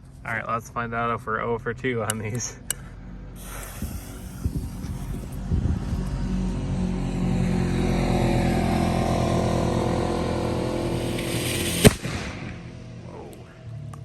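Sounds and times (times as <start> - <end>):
low droning tone: 2.8 - 14.0
firework fountain hissing: 3.4 - 5.5, 10.2 - 12.8
firework crackles: 3.4 - 5.9, 10.2 - 13.0.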